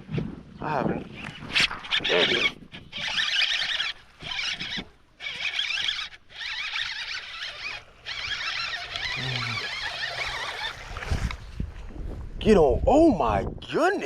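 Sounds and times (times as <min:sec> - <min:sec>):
fishing reel gear whirring: 0:01.0 - 0:11.5.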